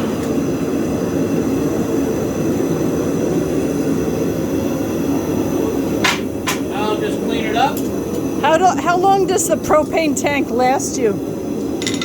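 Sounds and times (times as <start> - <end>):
forge burner roaring: 0.0 - 12.0.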